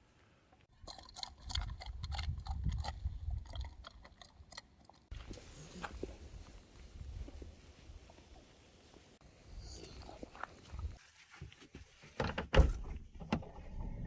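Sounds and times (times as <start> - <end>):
dog crunching food: 0.8 - 5.0.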